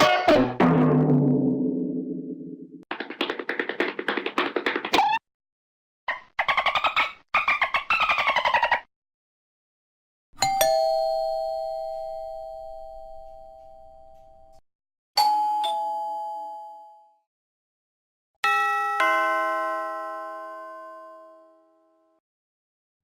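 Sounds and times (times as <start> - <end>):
two-note doorbell chime: 10.4 - 14.6, 15.2 - 17.2.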